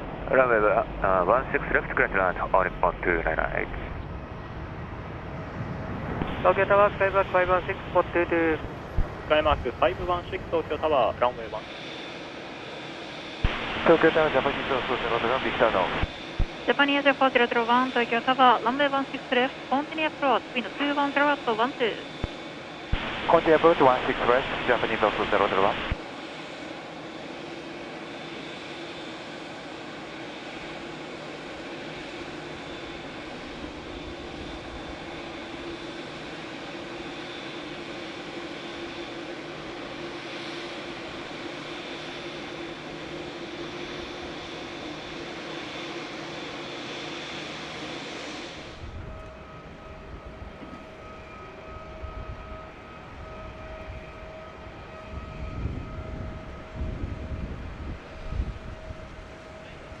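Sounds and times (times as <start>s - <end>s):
jet engines whining: 0.0s - 60.0s
low rumbles: 8.6s - 11.4s.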